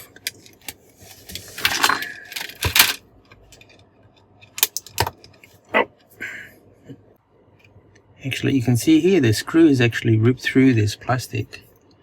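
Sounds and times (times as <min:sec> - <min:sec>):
scraping rustle of laptop parts: 0:00.4 - 0:03.0.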